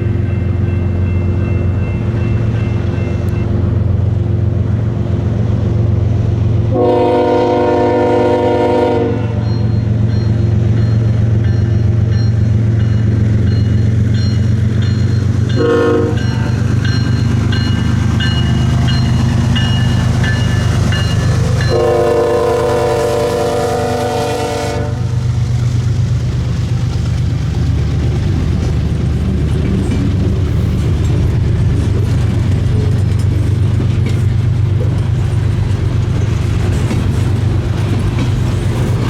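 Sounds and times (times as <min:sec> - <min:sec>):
diesel locomotive running: 0:00.0 - 0:39.0
locomotive air horn blasts: 0:06.7 - 0:09.6, 0:15.6 - 0:16.6, 0:21.6 - 0:25.2.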